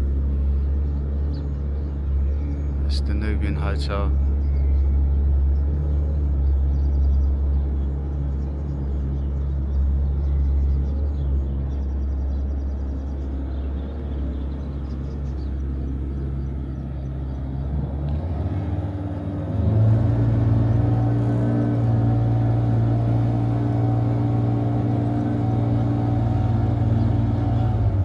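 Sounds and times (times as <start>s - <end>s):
motorboat engine droning: 0.0s - 28.0s.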